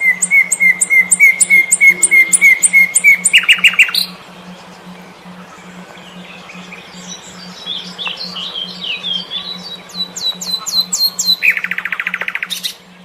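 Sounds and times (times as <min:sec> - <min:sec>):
low pulsing hum: 0:00.0 - 0:13.0
songbird singing: 0:00.0 - 0:13.0.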